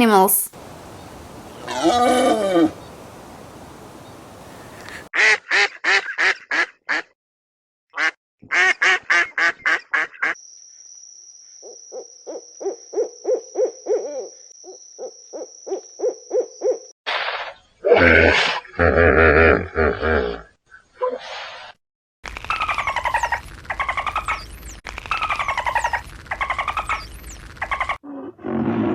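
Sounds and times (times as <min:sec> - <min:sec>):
lower-pitched calls: 0:00.1 - 0:05.1.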